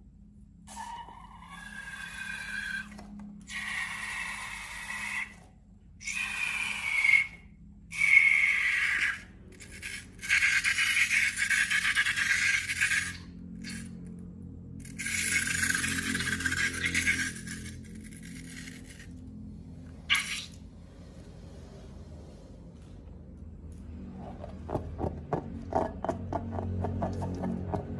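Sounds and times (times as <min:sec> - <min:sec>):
squeaky hissing slime bursts: 0:06.0 - 0:13.8, 0:20.1 - 0:20.6.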